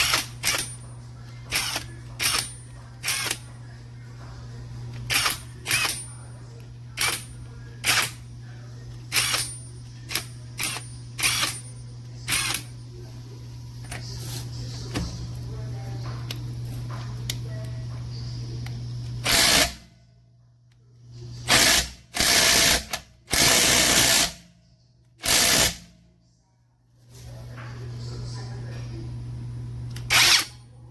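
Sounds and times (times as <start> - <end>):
impact wrench motor bursts: 0.0 - 0.7, 1.5 - 3.4, 5.1 - 6.0, 7.8 - 8.2, 9.1 - 9.5, 10.1 - 11.6, 12.3 - 12.7, 19.2 - 19.9, 21.4 - 24.4, 25.2 - 25.9, 30.0 - 30.6.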